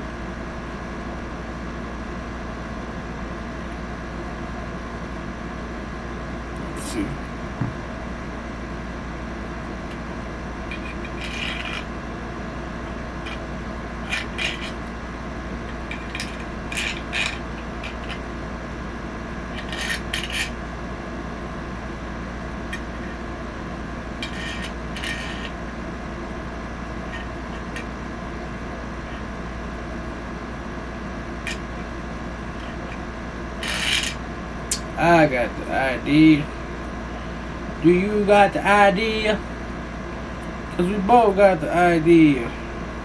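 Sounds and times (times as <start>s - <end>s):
steady low hum: 0.0s - 43.0s.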